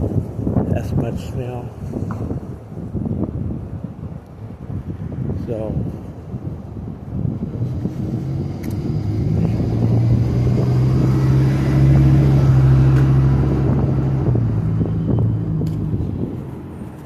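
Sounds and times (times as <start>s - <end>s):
vehicle engine hum: 6.6s - 17.0s.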